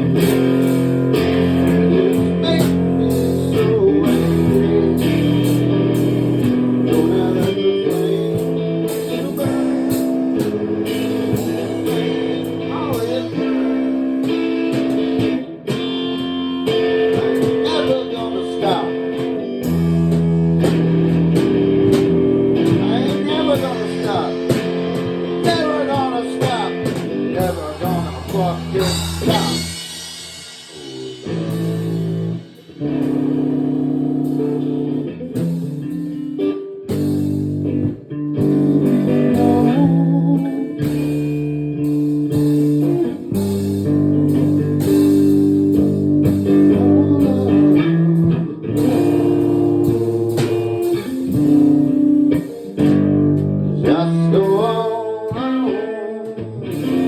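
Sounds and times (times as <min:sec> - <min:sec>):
blues band playing: 0:00.0 - 0:57.0
electric guitar bending notes: 0:00.0 - 0:57.0.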